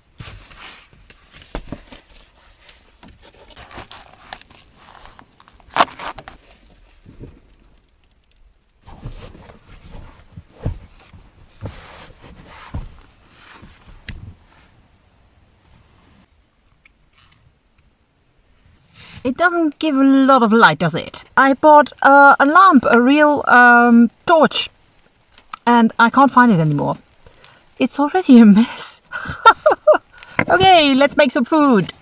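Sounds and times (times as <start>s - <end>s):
belongings rustling and scraping: 0.1s - 17.8s.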